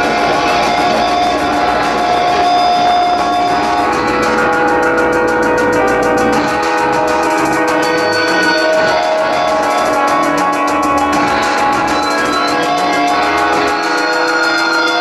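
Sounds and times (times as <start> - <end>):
drums: 0.0 - 15.0
electric guitars sustained notes: 0.0 - 15.0
fast cymbal beat: 0.0 - 15.0.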